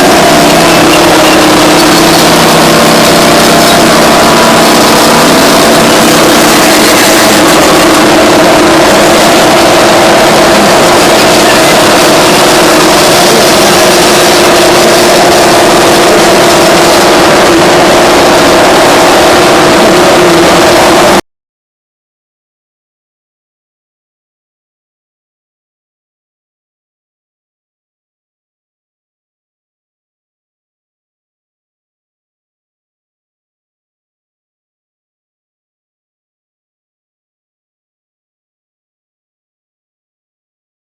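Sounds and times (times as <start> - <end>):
bulldozer diesel engines running: 0.0 - 21.2.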